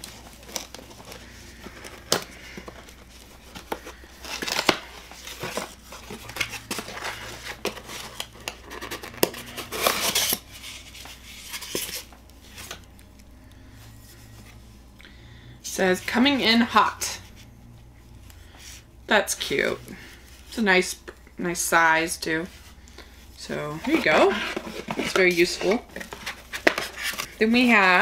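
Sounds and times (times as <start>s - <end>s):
wrapping crinkling and tearing: 0.0s - 13.3s.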